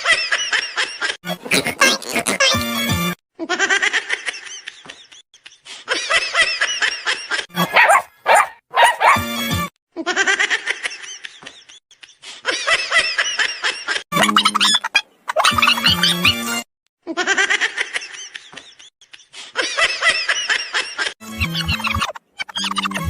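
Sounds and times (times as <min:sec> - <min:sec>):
high laughter-like animal calls: 0:07.6 - 0:09.2, 0:14.2 - 0:16.4
children's music: 0:14.2 - 0:14.8.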